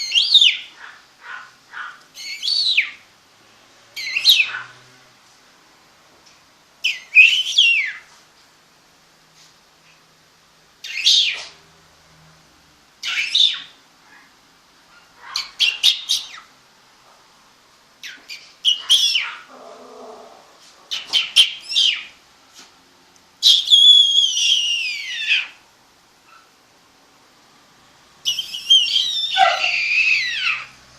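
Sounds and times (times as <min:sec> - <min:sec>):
puppies whining and squealing: 0:28.3 - 0:30.7.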